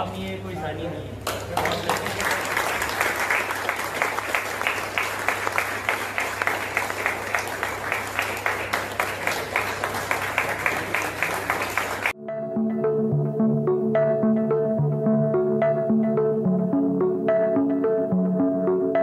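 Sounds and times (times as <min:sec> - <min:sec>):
crowd applauding: 0:01.2 - 0:12.2.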